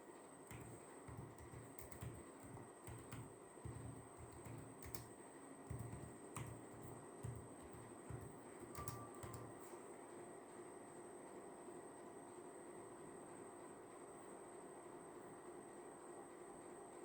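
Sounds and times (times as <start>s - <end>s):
typing on computer keyboard: 0.5s - 9.7s.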